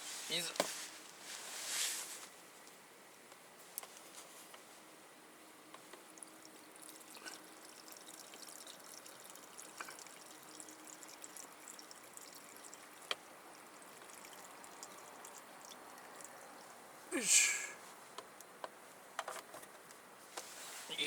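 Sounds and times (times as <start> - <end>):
water trickling into pot: 5.7 - 17.0.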